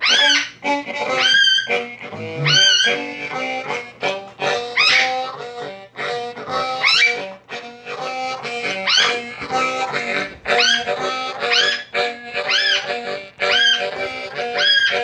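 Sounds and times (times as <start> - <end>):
bass harmonica playing blues: 0.0 - 15.0
guitar: 0.0 - 15.0
high rising and falling call: 2.2 - 3.0.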